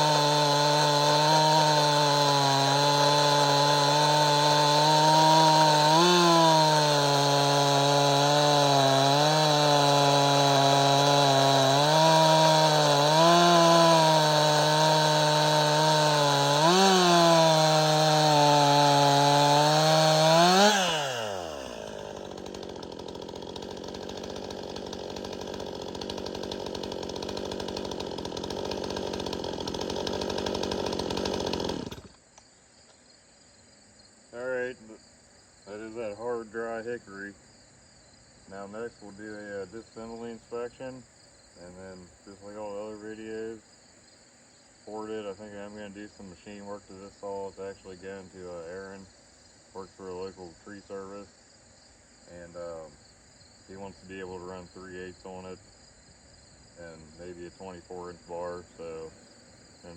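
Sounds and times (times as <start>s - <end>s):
chainsaw cutting wood: 0.0s - 33.0s, 35.7s - 37.3s, 38.5s - 43.6s, 44.9s - 51.2s, 52.2s - 55.7s, 56.8s - 59.9s.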